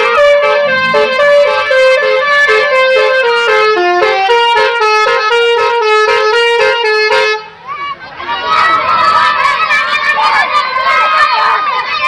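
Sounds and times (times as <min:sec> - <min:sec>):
musical bus horn melody: 0:00.0 - 0:07.6.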